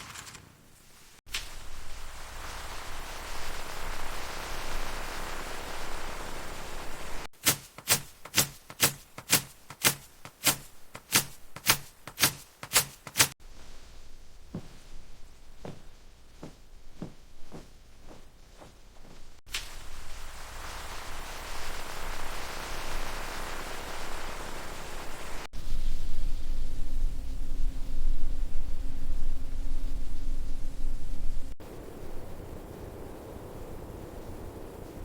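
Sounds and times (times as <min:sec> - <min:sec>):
steady hiss: 0:00.1 - 0:35.0
sharp strikes: 0:07.4 - 0:13.4.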